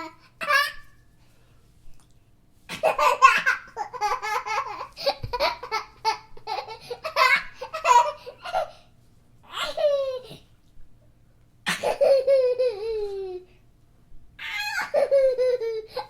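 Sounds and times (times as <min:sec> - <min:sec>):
baby giggling: 0:02.7 - 0:08.7, 0:11.7 - 0:13.5, 0:14.4 - 0:16.0
baby squealing: 0:14.4 - 0:15.1.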